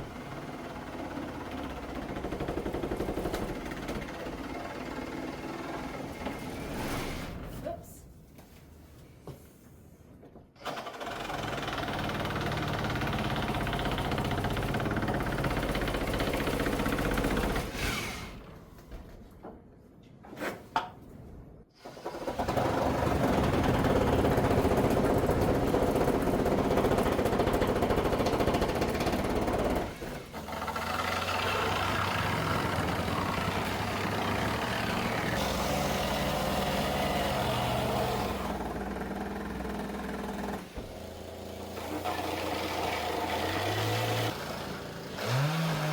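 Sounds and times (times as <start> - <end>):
power saw cutting: 28.5 - 45.9.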